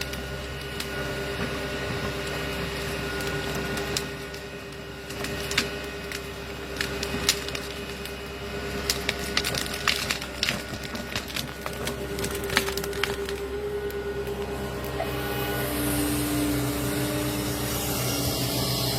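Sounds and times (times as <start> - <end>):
wood cracking and splintering: 0.0 - 18.9
machine humming: 11.2 - 18.9.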